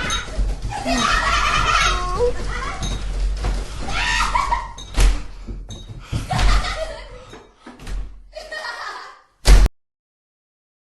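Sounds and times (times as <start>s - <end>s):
person laughing and vocalising: 0.7s - 2.4s
very loud bang: 9.4s - 9.7s.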